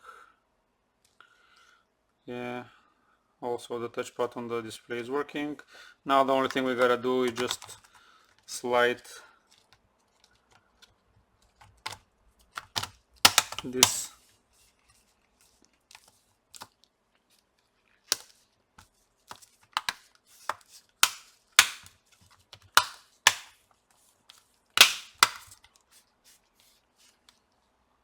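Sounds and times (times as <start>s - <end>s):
plastic cover clips snapping: 6.4s - 8.0s, 11.6s - 14.1s, 18.0s - 18.3s, 19.7s - 23.6s, 24.8s - 25.8s.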